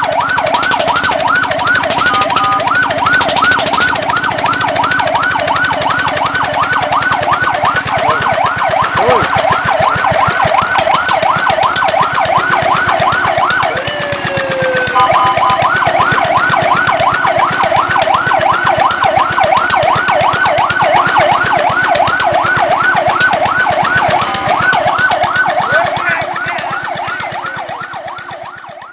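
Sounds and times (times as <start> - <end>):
fire truck siren yelping: 0.0 - 28.9.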